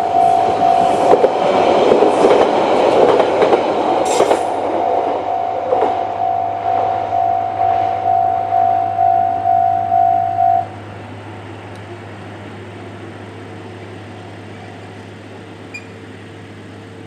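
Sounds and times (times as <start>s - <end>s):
level crossing alarm ding: 0.0s - 1.2s, 5.2s - 10.7s
low hum: 4.5s - 13.5s.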